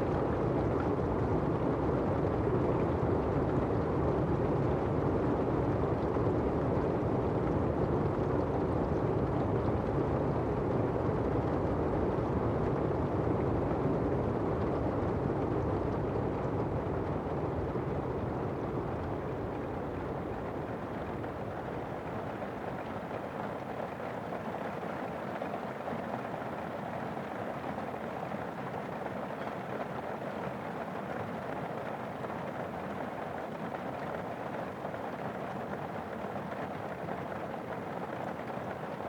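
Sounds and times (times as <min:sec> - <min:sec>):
steady rain hiss: 0:16.2 - 0:39.0.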